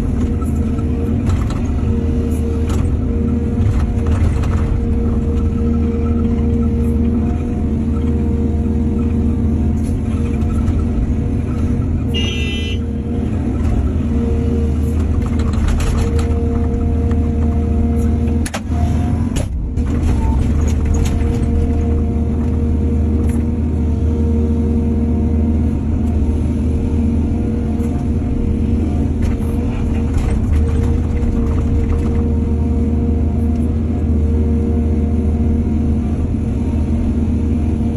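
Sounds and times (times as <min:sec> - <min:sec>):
diesel machinery rumbling: 0:00.0 - 0:37.9.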